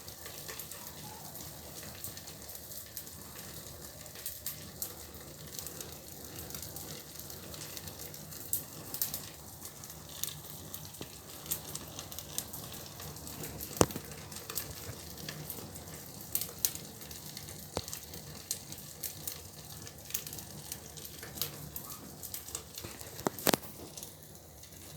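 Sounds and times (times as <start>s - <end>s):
fire hissing and crackling: 0.0s - 24.9s
sharp pops of fire: 7.3s - 15.7s, 16.3s - 24.2s.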